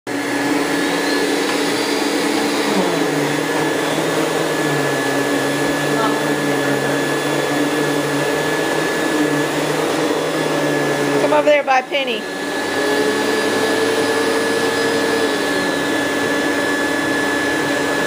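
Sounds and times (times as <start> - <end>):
vacuum cleaner running: 0.1 - 18.0.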